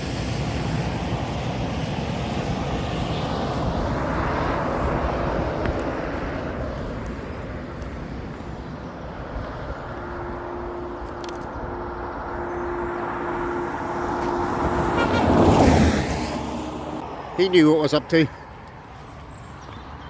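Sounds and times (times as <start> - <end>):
vehicle passing close: 0.0 - 18.3
steady hum: 9.7 - 17.0.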